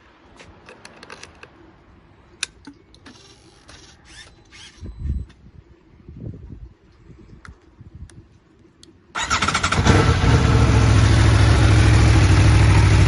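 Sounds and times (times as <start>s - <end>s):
motorcycle mechanical clicks and rattles: 0.5s - 1.6s, 2.4s - 5.4s.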